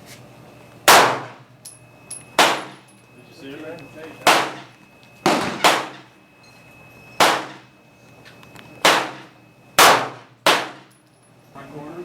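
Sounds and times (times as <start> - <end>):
gunshots with echo: 0.9 - 1.4, 7.2 - 7.6, 8.8 - 9.2, 9.8 - 10.8.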